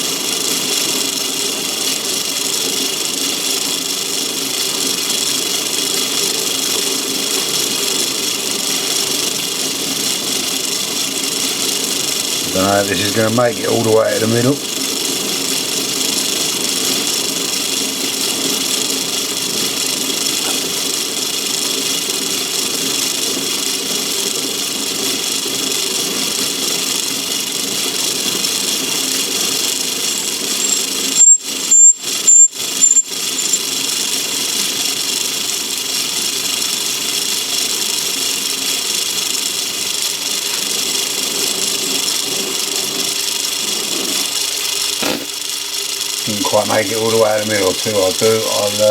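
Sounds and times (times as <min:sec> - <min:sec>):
lathe whirring: 0:00.0 - 0:48.9
cutting tool stuttering and squealing: 0:12.3 - 0:14.8, 0:29.7 - 0:33.8, 0:44.8 - 0:45.6, 0:46.2 - 0:48.9.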